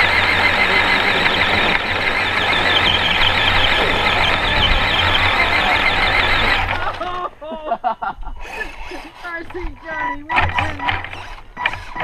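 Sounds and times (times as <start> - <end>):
electric motor high whine: 0.0 - 7.1
mechanical grinding: 0.0 - 7.2, 8.6 - 12.0.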